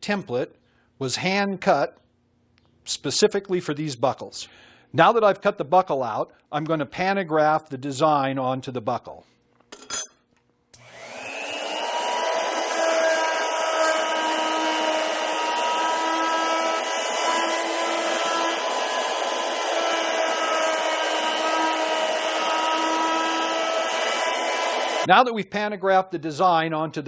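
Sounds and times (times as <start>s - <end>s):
engraving machine whining: 10.8s - 25.1s.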